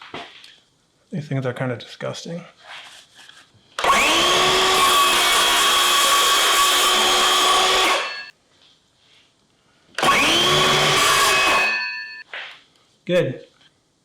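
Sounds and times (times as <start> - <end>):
power tool motor whining: 3.8 - 8.3, 10.0 - 12.2.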